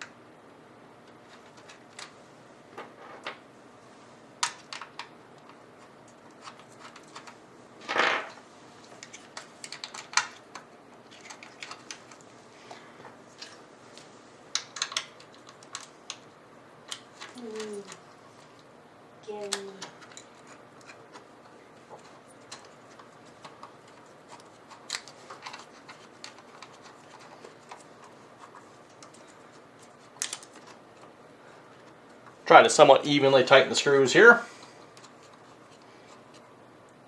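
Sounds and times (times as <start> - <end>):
small computer parts clicking: 8.9 - 12.3, 14.5 - 16.3, 22.4 - 29.3, 30.2 - 31.1.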